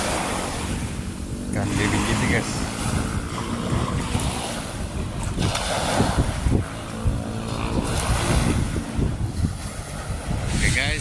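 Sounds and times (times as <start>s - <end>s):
sea water washing: 0.0s - 11.0s
wind buffeting microphone: 0.0s - 11.0s.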